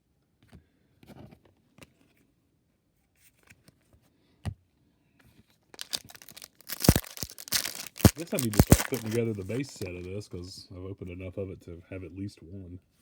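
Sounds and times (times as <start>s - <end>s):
cards clicking and scraping: 5.8s - 10.1s.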